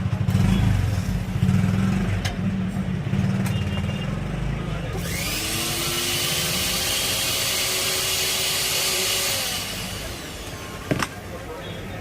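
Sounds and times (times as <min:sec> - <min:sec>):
electric motor whining: 0:04.9 - 0:10.9.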